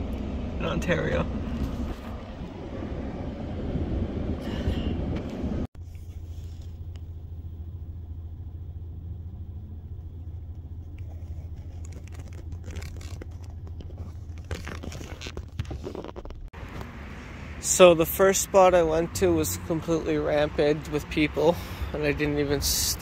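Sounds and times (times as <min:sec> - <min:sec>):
low rumble: 0:00.0 - 0:17.9
vehicle road noise: 0:00.0 - 0:23.0
crunching sounds: 0:10.4 - 0:17.0.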